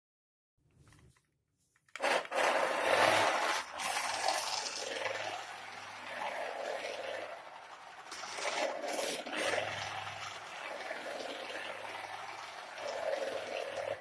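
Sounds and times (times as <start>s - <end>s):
small electric motor whirring: 2.0s - 11.0s
tyres scrubbing and hissing: 2.0s - 14.0s.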